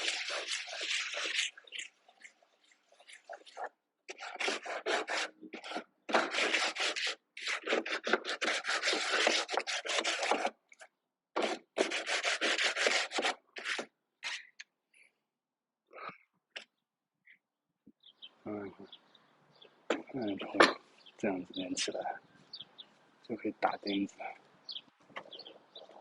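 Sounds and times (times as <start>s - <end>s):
hand tool rubbing on wood: 0.0s - 1.6s, 3.3s - 10.5s, 11.4s - 14.4s.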